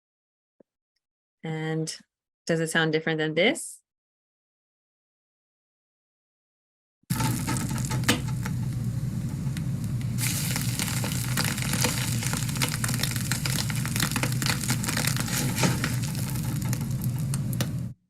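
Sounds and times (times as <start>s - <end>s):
food sizzling in a pan: 7.1s - 17.9s.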